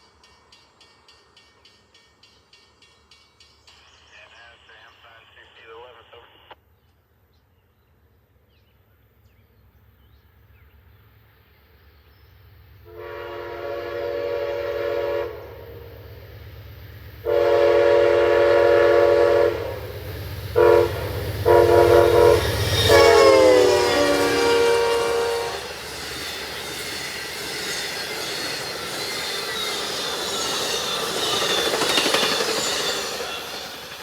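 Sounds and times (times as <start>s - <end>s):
train rumble: 8.2s - 34.0s
train air horn blasts: 12.9s - 16.0s, 17.2s - 19.9s, 20.6s - 25.8s.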